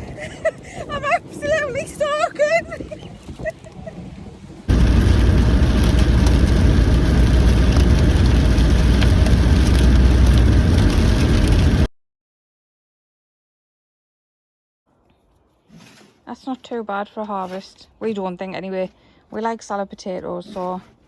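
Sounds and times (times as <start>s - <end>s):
deep steady rumble: 4.7s - 11.9s
heavy rain pelting down: 4.7s - 11.9s.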